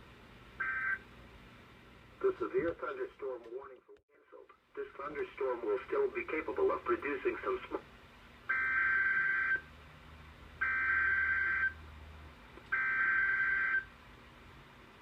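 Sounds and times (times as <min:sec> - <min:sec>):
screeching data tone bursts: 0:08.5 - 0:09.7, 0:10.6 - 0:11.8, 0:12.8 - 0:13.9.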